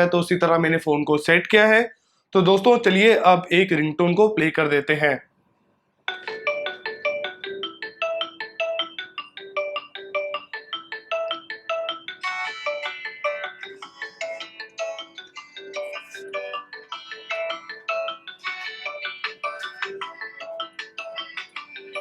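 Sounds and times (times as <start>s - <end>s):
phone ringtone melody: 6.1s - 22.0s.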